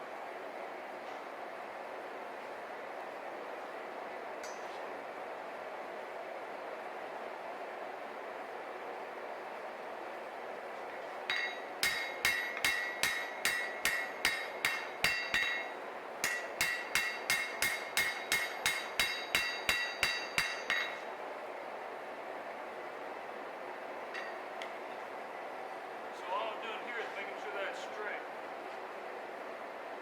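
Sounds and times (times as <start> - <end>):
hammer ringing on steel: 11.3 - 21.0.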